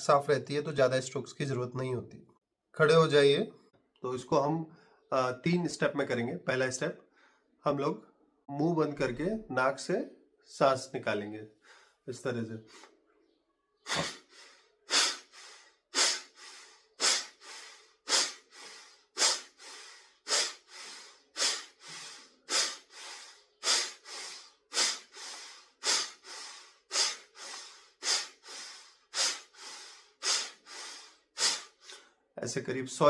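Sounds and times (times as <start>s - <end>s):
forceful nasal exhalations: 12.6s - 13.0s, 13.8s - 32.2s.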